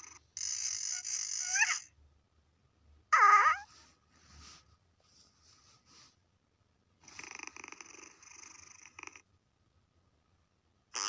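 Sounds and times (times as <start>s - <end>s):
cat purring: 7.0s - 9.3s.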